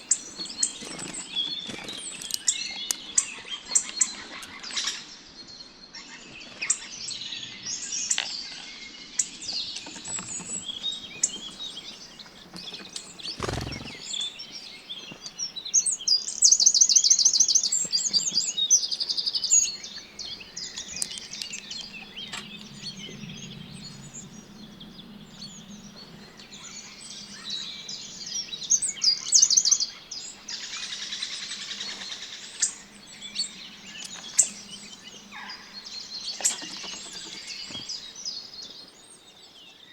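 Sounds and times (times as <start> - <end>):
songbirds singing and chirping: 0.0 - 39.9
fast bird trill: 10.7 - 22.2.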